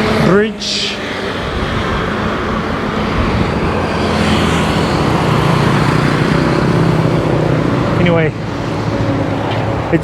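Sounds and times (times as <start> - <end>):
motor engine humming: 0.0 - 10.0
wind on microphone: 0.9 - 8.0.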